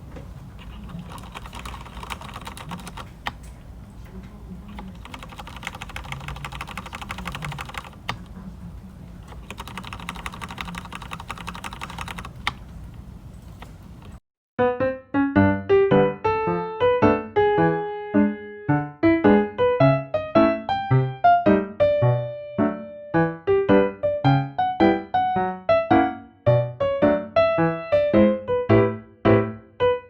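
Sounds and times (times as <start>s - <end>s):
heavier keystroke: 0.0s - 8.4s, 9.2s - 14.2s
fast mechanical keyboard typing: 0.6s - 3.5s, 4.6s - 8.4s, 9.2s - 12.7s.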